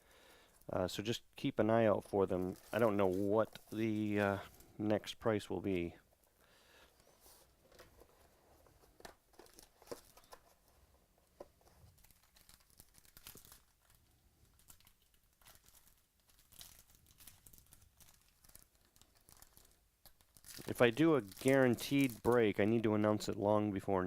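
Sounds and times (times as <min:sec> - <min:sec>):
packaging tearing and crinkling: 0:09.0 - 0:10.5, 0:11.6 - 0:22.8.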